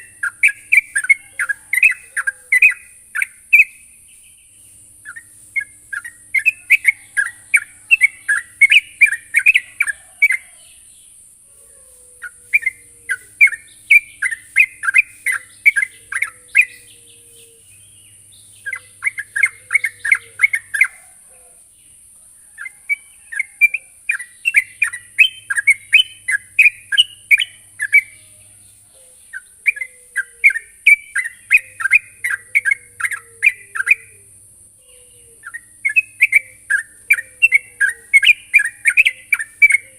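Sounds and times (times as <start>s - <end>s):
steady high hiss: 0.0s - 22.4s
bird singing bubbly phrases: 35.1s - 39.9s.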